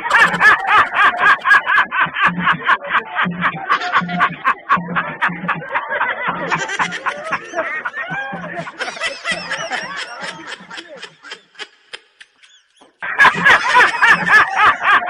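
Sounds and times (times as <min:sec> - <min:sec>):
snickering laughter: 0:00.0 - 0:15.0.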